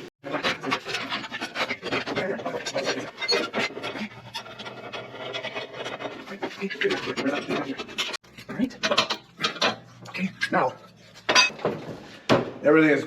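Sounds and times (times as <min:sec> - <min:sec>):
steel parts clicking and knocking: 0:00.2 - 0:06.1, 0:07.0 - 0:12.0.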